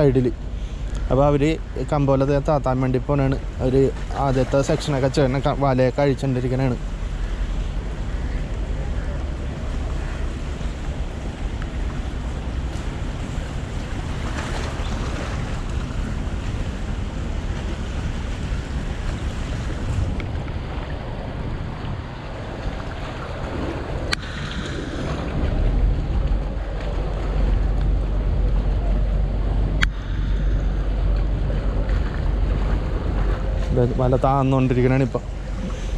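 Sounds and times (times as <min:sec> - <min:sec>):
water washing on shore: 0:00.0 - 0:35.9
wind buffeting microphone: 0:00.0 - 0:35.9.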